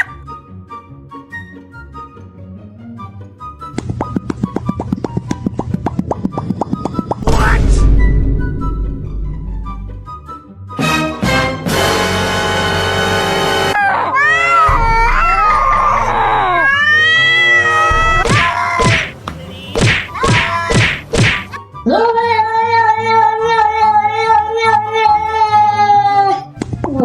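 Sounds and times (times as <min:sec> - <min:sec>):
gliding wailing cries: 0:13.8 - 0:19.2
rising-and-falling calls: 0:15.4 - 0:20.8.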